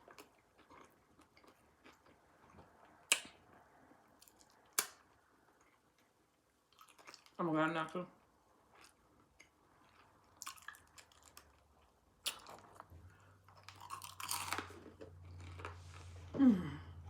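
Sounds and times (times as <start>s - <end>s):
chewing and wet lip smacking: 6.7s - 7.4s, 8.7s - 12.9s
crunchy bites: 13.6s - 15.7s.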